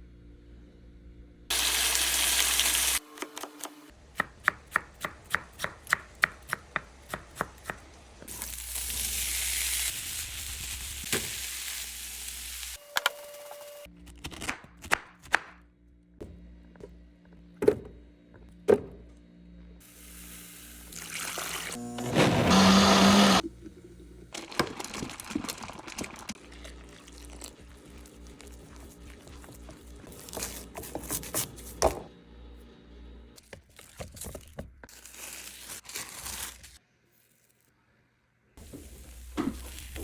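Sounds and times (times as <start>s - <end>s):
food sizzling in a hot pan: 1.5s - 3.0s, 8.3s - 12.8s.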